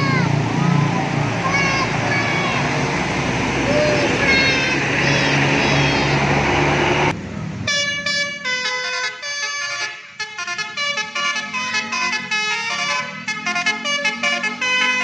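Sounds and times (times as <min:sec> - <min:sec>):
loud noisy rush with horn tones: 0:00.0 - 0:07.1, 0:07.7 - 0:15.0
multi-tone bus air horn melody: 0:07.7 - 0:15.0.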